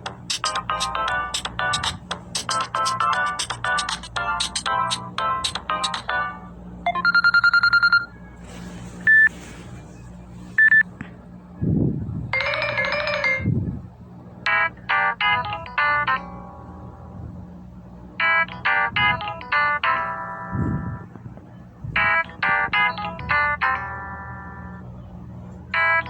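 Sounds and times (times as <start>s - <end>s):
electronic ringtone melody: 0.3s - 8.1s, 12.4s - 13.6s, 14.5s - 17.1s, 18.2s - 21.1s, 22.0s - 24.8s, 25.7s - 26.0s
short beep: 9.1s - 9.4s
electronic ringtones: 12.4s - 13.6s, 25.8s - 26.0s.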